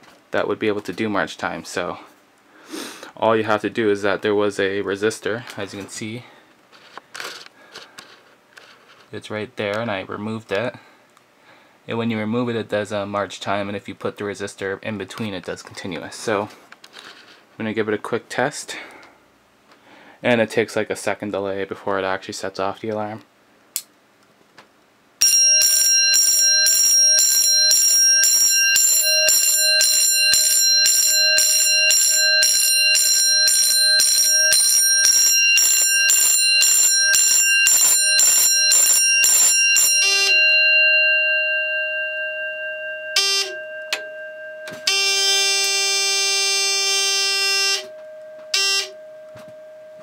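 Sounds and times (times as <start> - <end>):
fire alarm bell ringing: 25.2 - 50.0
buzzer: 35.6 - 40.3, 43.2 - 43.6, 44.8 - 47.9, 48.5 - 49.0.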